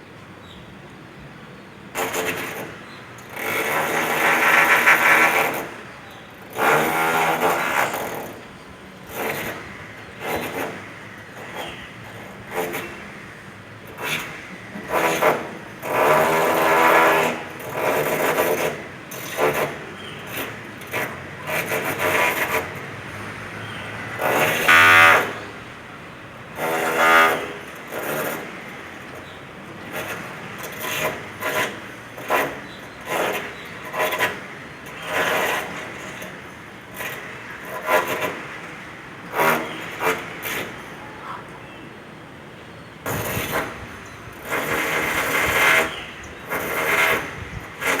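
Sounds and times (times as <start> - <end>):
construction rasping and knocking: 1.9 - 48.0.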